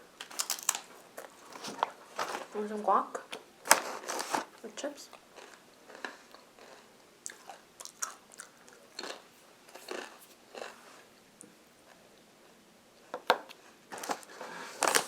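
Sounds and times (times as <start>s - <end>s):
tortilla chips crunching: 0.2s - 2.6s, 5.2s - 10.8s, 13.9s - 15.0s.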